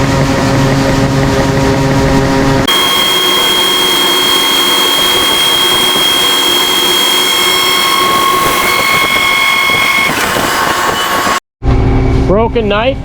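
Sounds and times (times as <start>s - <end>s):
high-pitched whine: 0.0s - 12.7s
farm machine engine running: 2.6s - 11.4s.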